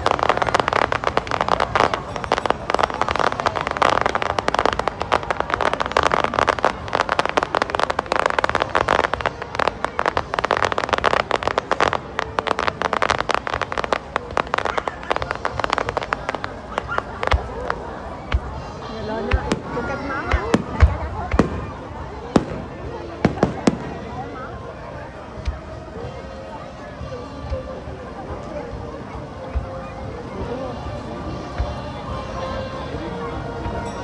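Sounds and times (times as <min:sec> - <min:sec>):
fireworks crackling pops: 0:00.0 - 0:26.5
crowd voices: 0:00.0 - 0:34.0.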